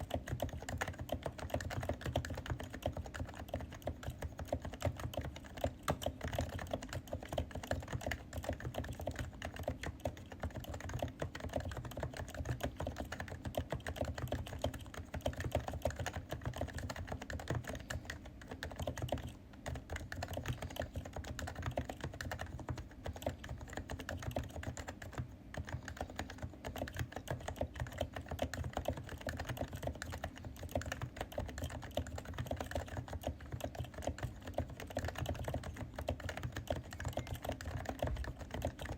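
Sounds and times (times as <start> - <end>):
fast typing on keyboard: 0.0 - 38.9.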